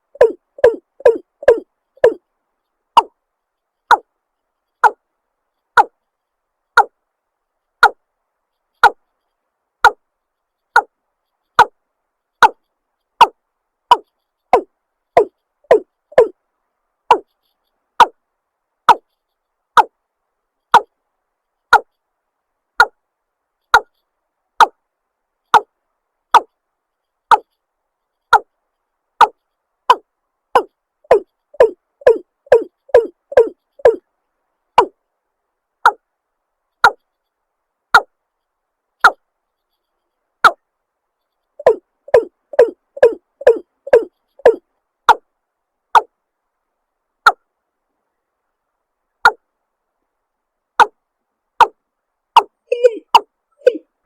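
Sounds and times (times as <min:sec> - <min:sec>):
bird calling hollow notes: 0:00.0 - 0:02.2, 0:03.9 - 0:04.1, 0:04.8 - 0:05.0, 0:13.2 - 0:16.4, 0:17.1 - 0:17.3, 0:30.6 - 0:34.0, 0:34.8 - 0:35.0, 0:41.6 - 0:45.2.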